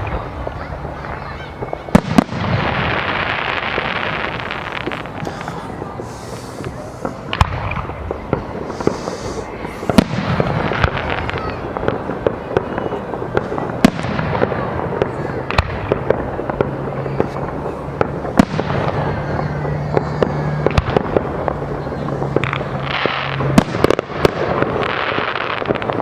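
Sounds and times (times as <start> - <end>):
fireworks crackling hiss: 0.0 - 26.0
firework shell bursts: 8.6 - 11.6.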